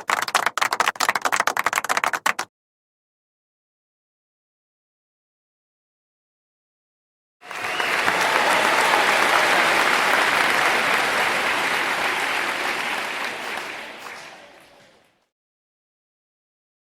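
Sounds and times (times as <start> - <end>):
audience applauding: 0.0 - 2.5, 7.4 - 15.2.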